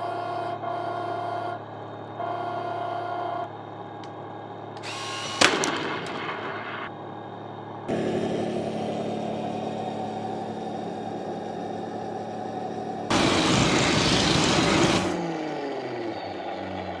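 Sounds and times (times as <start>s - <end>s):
simulated tank engine sound: 0.1s - 17.0s
engine winding down in falling tones: 4.8s - 7.2s, 7.9s - 17.0s
loud rushing blast: 5.3s - 6.9s, 13.1s - 15.3s.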